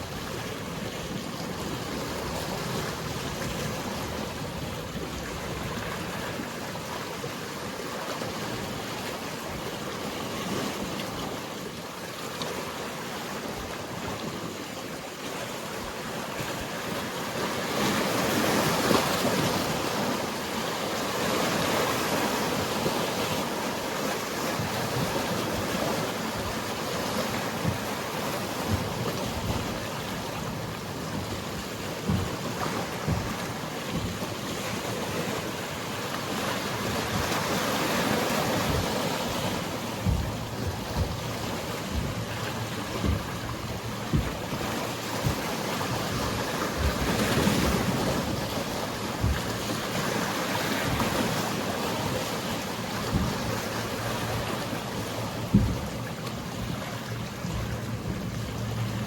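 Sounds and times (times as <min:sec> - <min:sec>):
sea waves washing: 0:00.0 - 0:59.0
wind: 0:00.0 - 0:59.0
short low thumps: 0:30.4 - 0:34.3, 0:39.9 - 0:48.3, 0:49.2 - 0:49.6, 0:55.5 - 0:56.0.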